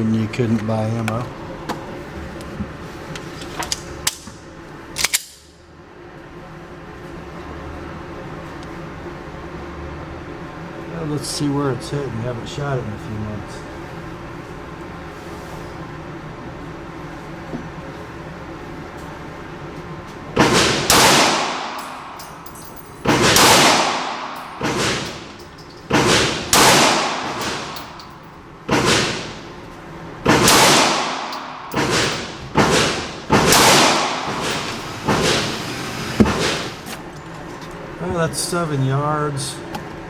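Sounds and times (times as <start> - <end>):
pistol shots with echo: 20.4 - 22.2, 23.1 - 25.2, 25.9 - 27.8, 30.3 - 34.7.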